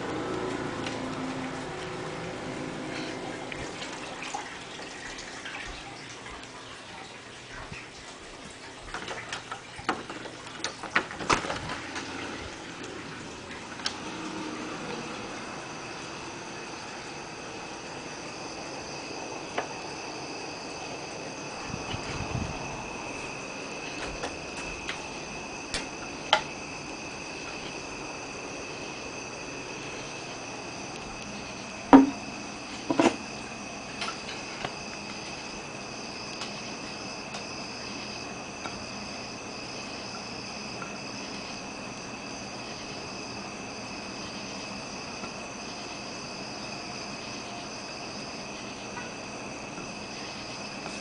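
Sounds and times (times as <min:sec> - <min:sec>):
faint steady background noise: 0:00.0 - 0:51.0
microwave oven whine: 0:00.0 - 0:51.0
loud knock: 0:31.9 - 0:32.2.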